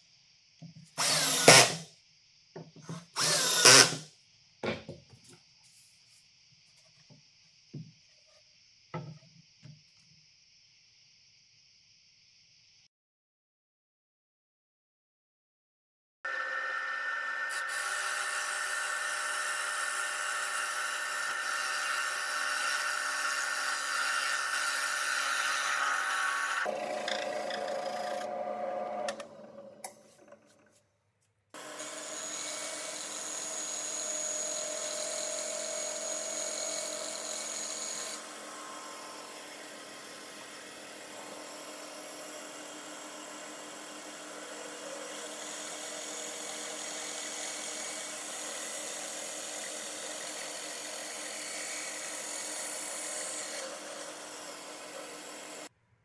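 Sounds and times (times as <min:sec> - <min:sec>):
power tool working wood: 0:01.0 - 0:01.8, 0:02.8 - 0:04.1, 0:16.3 - 0:30.5, 0:31.6 - 0:55.7.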